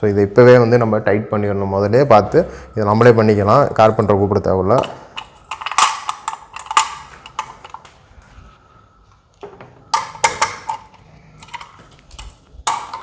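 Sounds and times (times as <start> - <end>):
keys and lock parts clinking: 1.9 - 8.2, 9.9 - 13.0.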